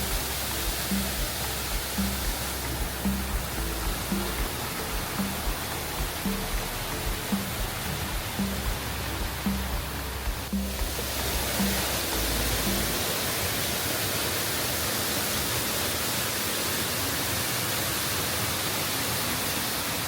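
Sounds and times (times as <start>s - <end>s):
low music notes: 0.0s - 13.5s
waterfall rushing: 0.0s - 20.0s.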